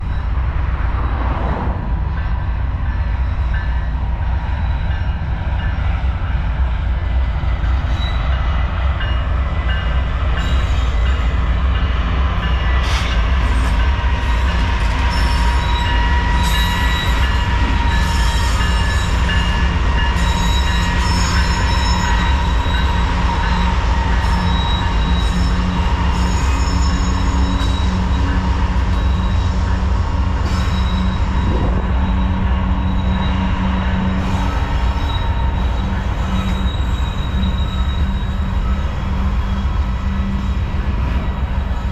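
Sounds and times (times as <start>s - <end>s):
freight train rumbling past: 0.0s - 41.9s
wheels squealing: 14.9s - 29.7s, 30.4s - 39.8s.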